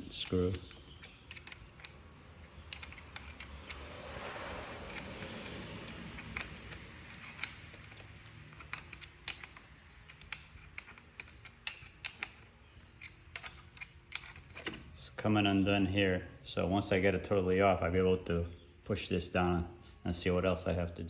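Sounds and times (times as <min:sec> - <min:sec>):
hand tool metal clicks: 0:00.1 - 0:14.8.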